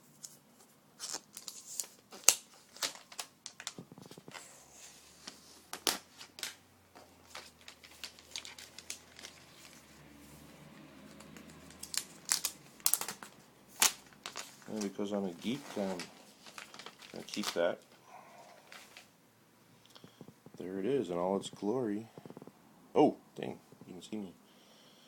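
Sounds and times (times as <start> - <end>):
plastic wrap crinkling: 1.0 - 10.0, 11.0 - 19.1.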